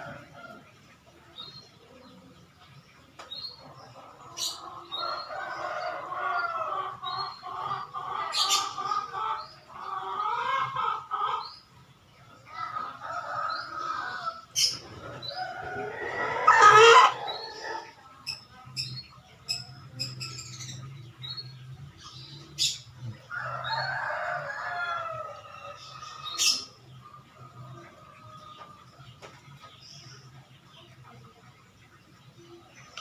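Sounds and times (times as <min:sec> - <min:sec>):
small birds chirping: 0:00.0 - 0:33.0
chicken squawking: 0:15.6 - 0:18.0.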